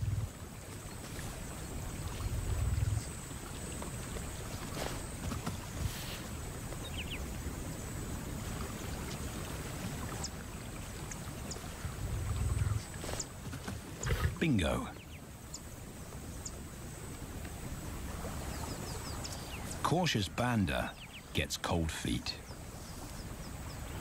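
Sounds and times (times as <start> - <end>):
low rumble: 0.0 - 0.3, 2.1 - 3.2, 11.8 - 12.9
water sloshing and splashing: 0.0 - 20.2.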